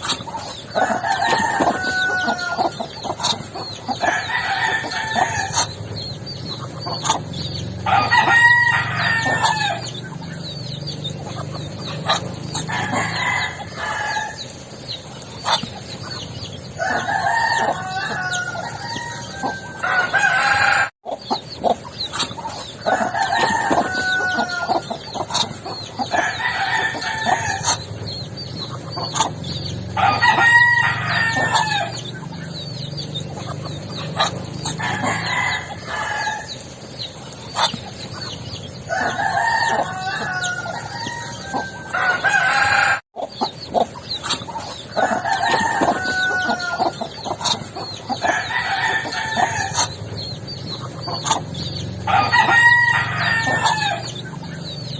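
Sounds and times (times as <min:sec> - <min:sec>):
chickens clucking: 0:00.0 - 0:54.9
rooster crowing: 0:00.7 - 0:02.9, 0:03.9 - 0:05.7, 0:07.8 - 0:09.9, 0:12.6 - 0:14.4, 0:16.8 - 0:20.9, 0:22.8 - 0:25.0, 0:26.1 - 0:27.8, 0:29.9 - 0:32.1, 0:34.6 - 0:36.6, 0:38.9 - 0:43.0, 0:44.9 - 0:49.9, 0:52.0 - 0:54.2.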